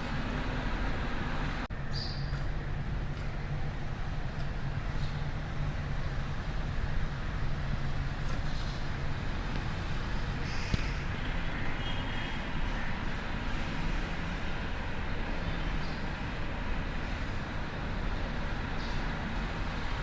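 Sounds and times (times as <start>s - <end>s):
steady low rumble: 0.0s - 20.0s
faint bird chirps: 1.9s - 2.4s.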